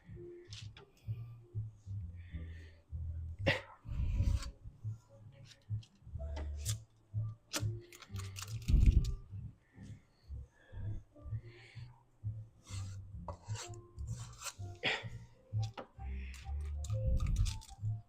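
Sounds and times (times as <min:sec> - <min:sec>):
metal scoop clicking and scraping: 0:07.5 - 0:09.2, 0:12.7 - 0:14.7, 0:16.3 - 0:17.8.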